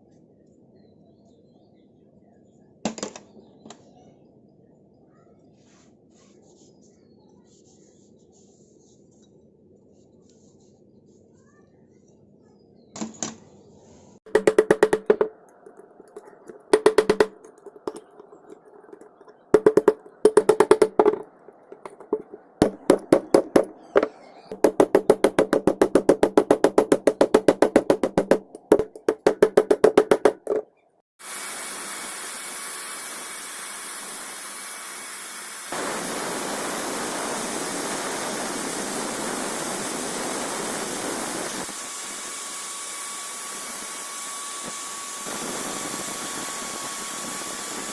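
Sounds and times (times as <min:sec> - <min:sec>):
machine noise with high whine: 0:31.2 - 0:47.9.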